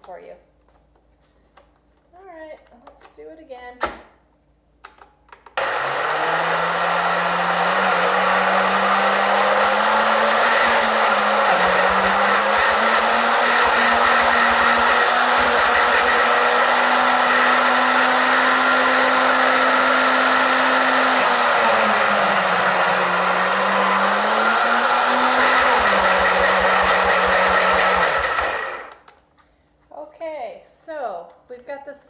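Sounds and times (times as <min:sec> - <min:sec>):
blender chopping frozen fruit: 0:05.6 - 0:29.1.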